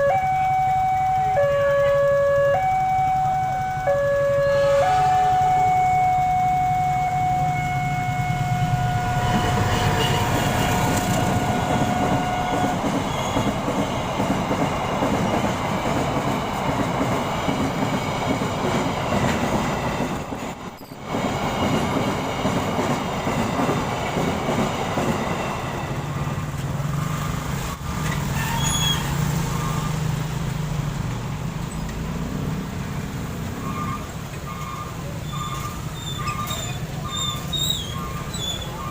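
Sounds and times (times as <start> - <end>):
level crossing siren: 0.0 - 9.4
crossing alarm short beeps: 0.0 - 10.0, 33.6 - 38.9
train wheels clattering on rails: 4.6 - 32.4, 33.0 - 38.9.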